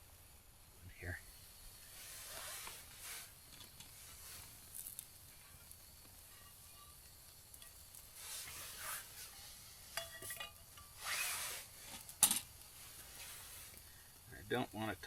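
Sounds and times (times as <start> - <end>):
scraping against a pan: 1.8 - 13.8
metal clink: 10.0 - 11.0.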